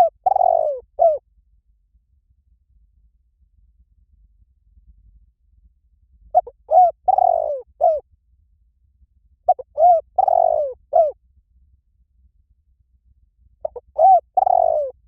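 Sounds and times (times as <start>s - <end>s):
dove cooing: 0.0s - 1.2s, 6.4s - 8.0s, 9.5s - 11.2s, 13.6s - 15.0s.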